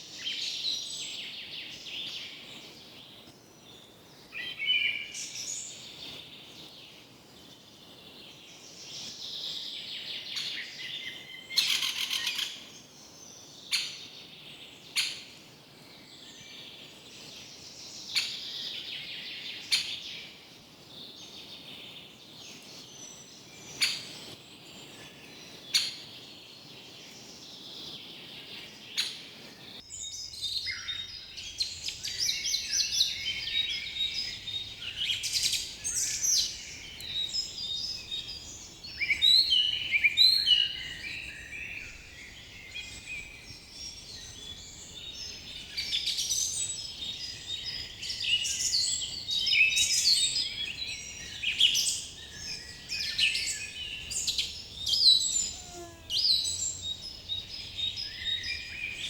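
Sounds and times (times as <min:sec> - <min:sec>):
forest birds chirping: 0:00.0 - 0:59.0.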